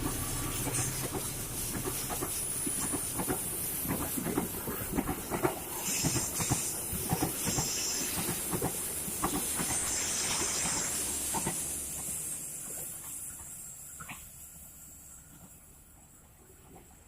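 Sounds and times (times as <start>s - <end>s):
train wheels clattering: 0.0s - 13.6s
steady hiss: 0.0s - 16.6s.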